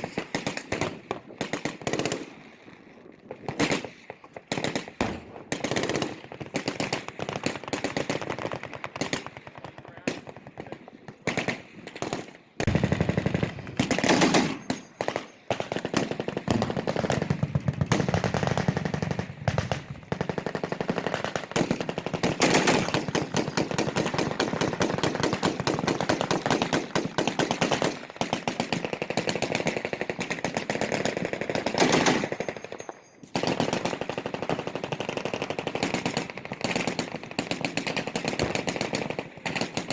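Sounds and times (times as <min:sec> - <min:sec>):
machine gun fire: 0:11.3 - 0:39.0.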